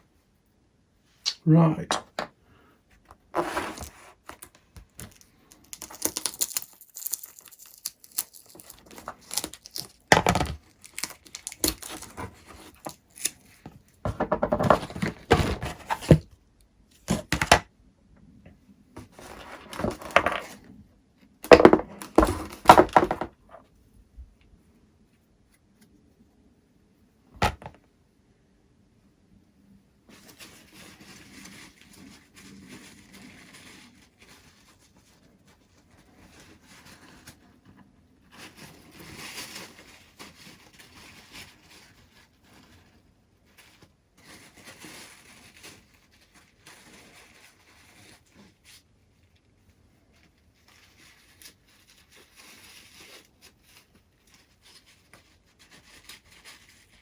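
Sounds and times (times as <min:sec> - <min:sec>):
masking tape pulled and torn: 0:04.4 - 0:13.5
handling knocks: 0:21.5 - 0:23.4.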